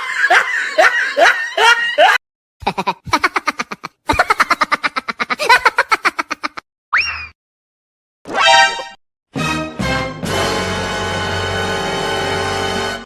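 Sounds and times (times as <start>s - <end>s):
high-pitched laughter: 0.0s - 6.6s.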